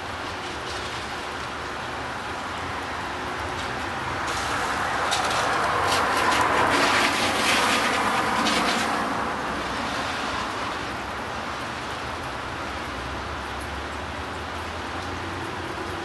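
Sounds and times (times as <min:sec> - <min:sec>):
vehicle passing by: 0:03.9 - 0:11.1.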